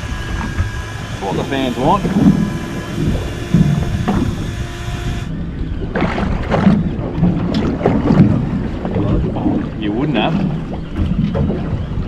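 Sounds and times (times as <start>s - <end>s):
steady hum with thin tones: 0.0s - 5.6s
boat rumble: 0.0s - 12.0s.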